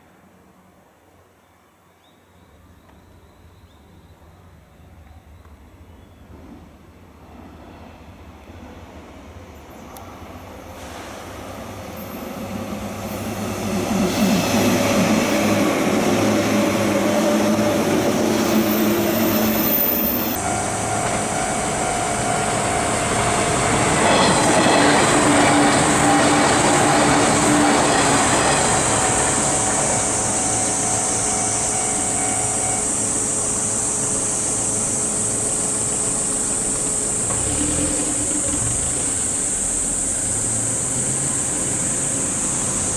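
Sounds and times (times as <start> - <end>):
electric train running on rails: 2.8 - 42.9.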